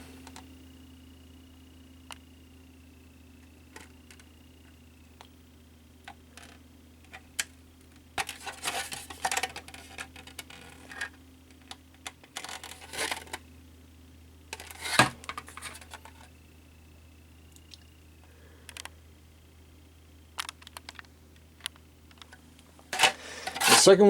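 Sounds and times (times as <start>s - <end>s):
plastic parts clicking: 20.4s - 22.4s.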